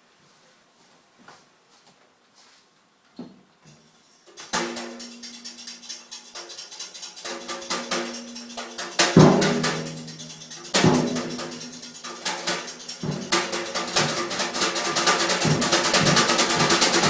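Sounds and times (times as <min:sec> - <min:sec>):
music with ticking beat: 0:04.3 - 0:17.0.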